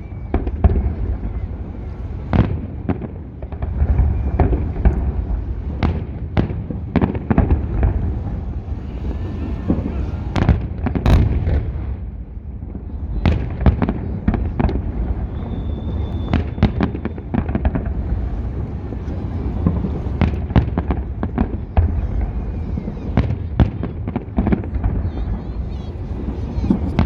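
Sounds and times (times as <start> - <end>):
low rumble: 0.0 - 22.9
fireworks bangs: 0.0 - 27.0.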